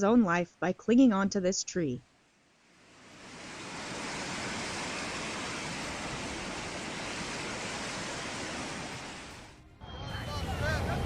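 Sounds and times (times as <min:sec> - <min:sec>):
flood water rushing: 0:02.6 - 0:09.6.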